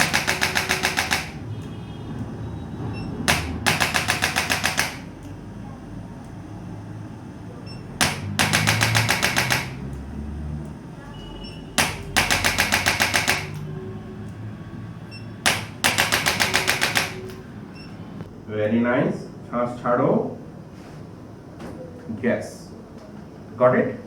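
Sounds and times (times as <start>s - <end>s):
rapid mechanical clicking: 0.0s - 2.3s, 3.2s - 5.4s, 8.0s - 10.1s, 11.8s - 14.4s, 15.4s - 17.9s.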